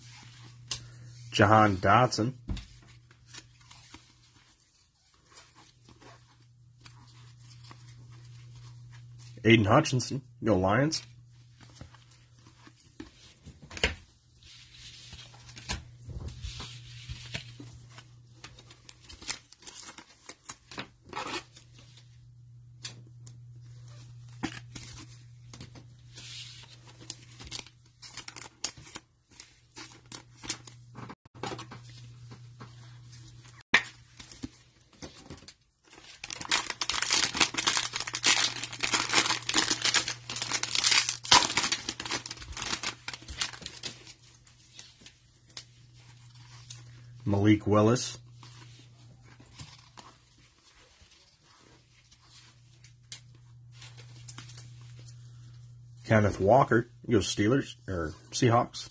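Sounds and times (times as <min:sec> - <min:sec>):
cellophane wrappers rustling: 0:32.9 - 0:55.8
wrapper tearing and crinkling: 0:35.8 - 0:44.8.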